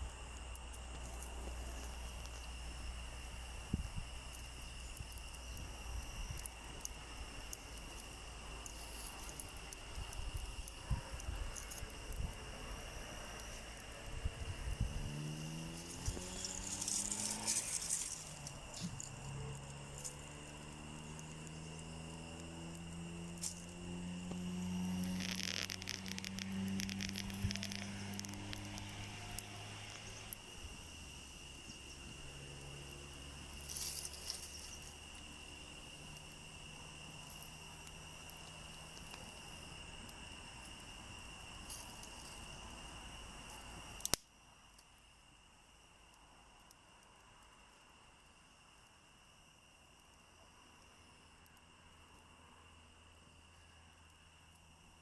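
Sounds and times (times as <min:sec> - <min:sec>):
low outdoor rumble: 0:00.0 - 0:44.2
faint crackles: 0:00.0 - 0:45.0
crickets trilling: 0:00.0 - 0:55.0
high thin insect-like tone: 0:00.0 - 0:55.0.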